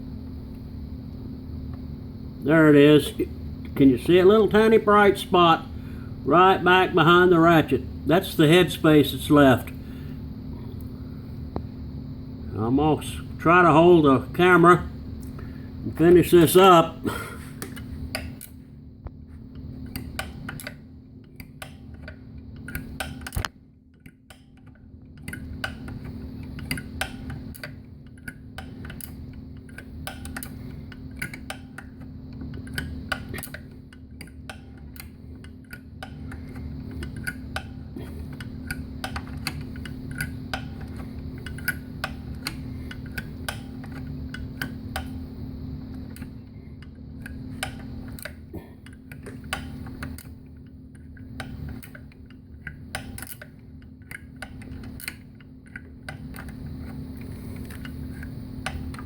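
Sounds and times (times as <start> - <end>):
steady low hum: 0.0 - 59.0
ratchet wrench clicking: 51.4 - 56.6.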